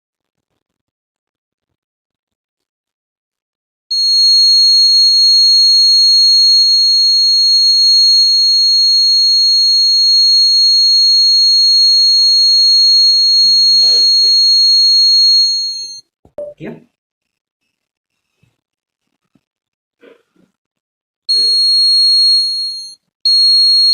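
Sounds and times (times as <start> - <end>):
high-pitched electronic tone: 3.9 - 16.5.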